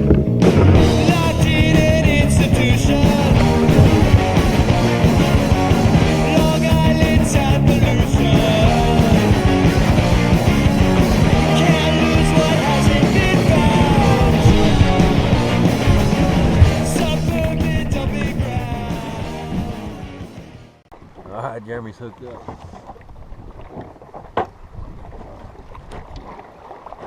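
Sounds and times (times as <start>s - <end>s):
rock music with electric guitar: 0.0s - 20.8s.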